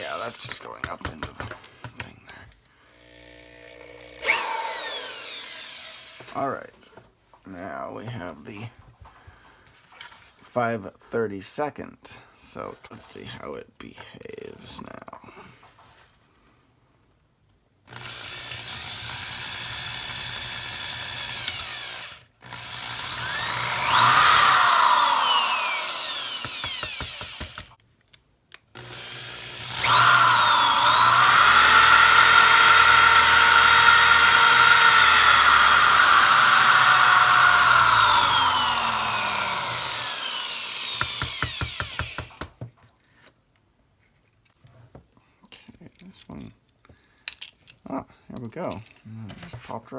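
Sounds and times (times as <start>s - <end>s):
electric drill drilling metal: 3.0s - 6.4s, 17.9s - 27.8s, 28.8s - 42.5s.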